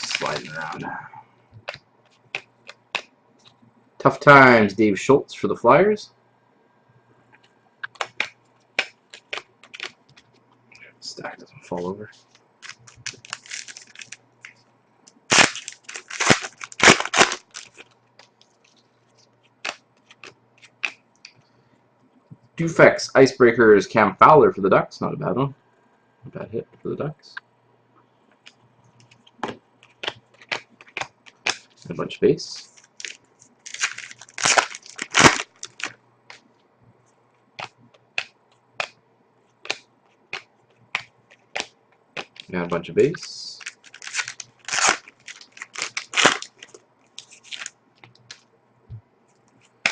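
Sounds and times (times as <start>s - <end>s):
foil wrapper crackling: 0.0s - 0.8s, 12.3s - 14.6s, 15.3s - 18.8s, 29.8s - 31.9s, 32.6s - 36.4s, 43.6s - 48.4s.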